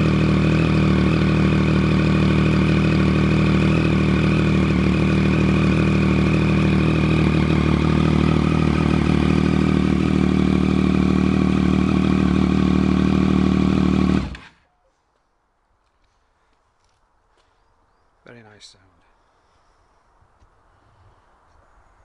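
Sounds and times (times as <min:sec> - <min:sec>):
motorcycle engine idling: 0:00.0 - 0:14.7.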